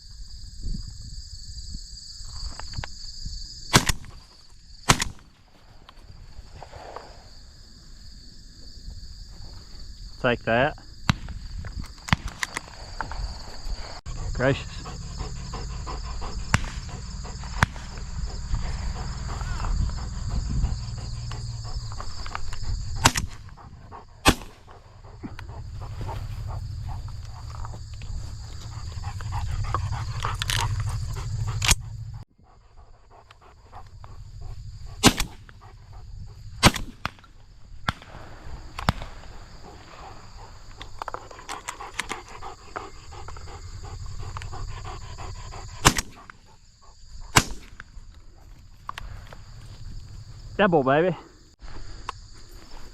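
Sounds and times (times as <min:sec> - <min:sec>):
high insect drone: 0:00.0 - 0:52.9
shotgun shots: 0:03.7 - 0:04.1, 0:04.9 - 0:05.3, 0:16.5 - 0:16.8, 0:17.6 - 0:18.0, 0:23.0 - 0:23.5, 0:24.2 - 0:24.7, 0:35.0 - 0:35.5, 0:36.6 - 0:39.2, 0:45.8 - 0:46.2, 0:47.3 - 0:47.8
distant shotgun shots: 0:04.9 - 0:05.3, 0:16.5 - 0:18.0, 0:24.2 - 0:24.7, 0:35.0 - 0:35.5, 0:36.6 - 0:39.5, 0:45.8 - 0:46.2, 0:47.3 - 0:47.8
low rumble: 0:14.0 - 0:32.3.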